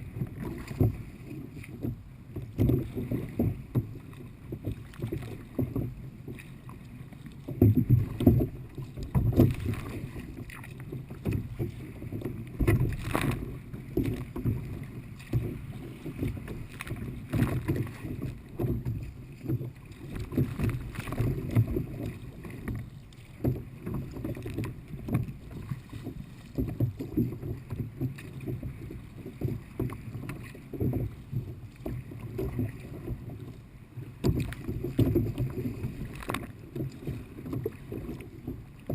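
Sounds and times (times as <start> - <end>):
paddle splashes: 0.0 - 38.9
water slapping against hull: 0.0 - 38.9.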